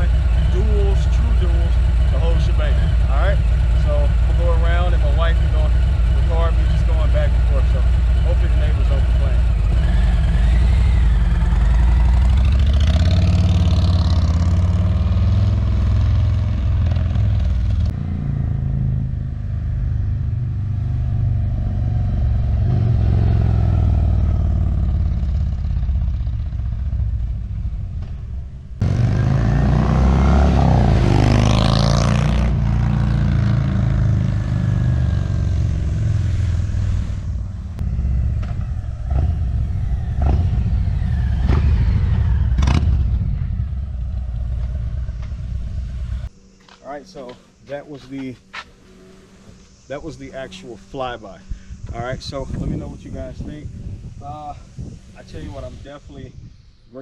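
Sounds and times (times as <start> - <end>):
motorcycle revving past: 0.0 - 47.6, 48.4 - 56.0.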